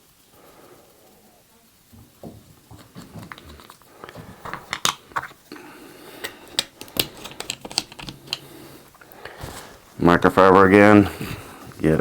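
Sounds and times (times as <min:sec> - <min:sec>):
plastic toy parts clicking and rubbing: 0:01.7 - 0:12.0.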